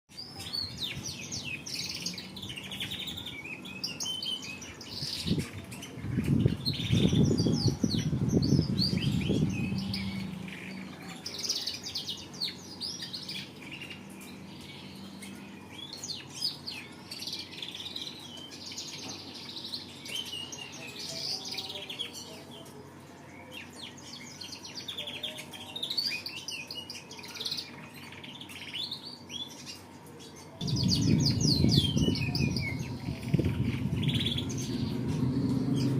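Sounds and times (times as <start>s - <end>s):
canary singing: 0.1s - 35.9s
low rumble: 6.1s - 11.0s, 30.6s - 35.9s.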